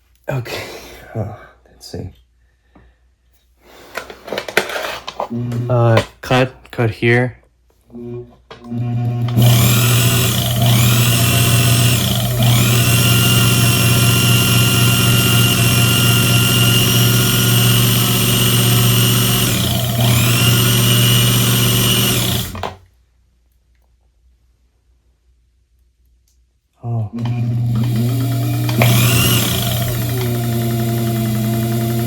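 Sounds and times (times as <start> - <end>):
small electric motor whining: 8.0 - 22.8, 27.2 - 32.0.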